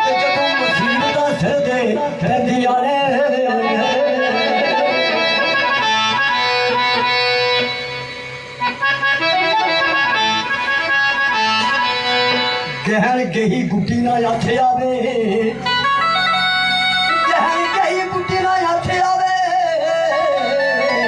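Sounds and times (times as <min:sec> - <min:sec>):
free-reed instrument music: 0:00.0 - 0:21.0.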